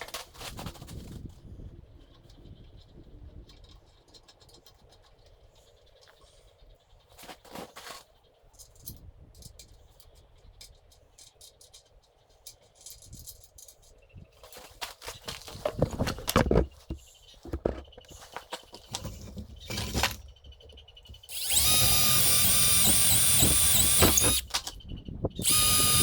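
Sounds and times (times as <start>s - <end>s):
tools and hardware clicking and rattling: 8.6s - 24.8s.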